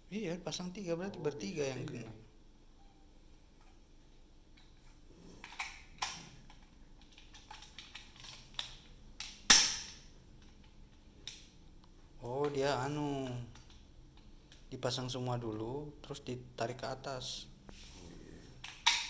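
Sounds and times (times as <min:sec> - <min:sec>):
sharp loud snap: 0:09.5 - 0:10.0
plastic toy pistol clicks and knocks: 0:18.7 - 0:19.0.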